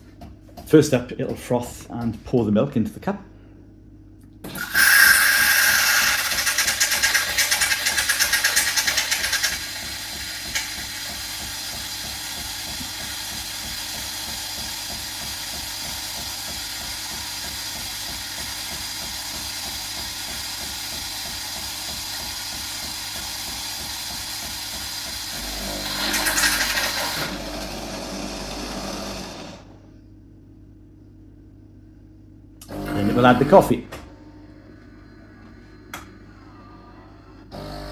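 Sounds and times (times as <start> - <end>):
coffee machine pump buzzing: 4.4 - 29.8, 32.6 - 37.9
steam hissing through milk: 4.5 - 27.4.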